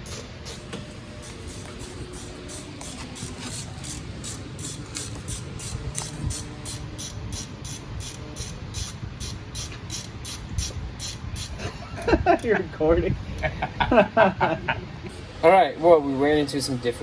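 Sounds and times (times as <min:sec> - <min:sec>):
ratchet wrench clicking: 0:01.5 - 0:11.6.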